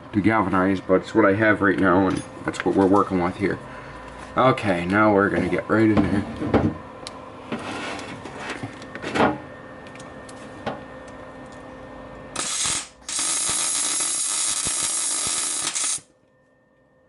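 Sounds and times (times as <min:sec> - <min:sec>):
welder arc hissing: 0:12.4 - 0:16.1.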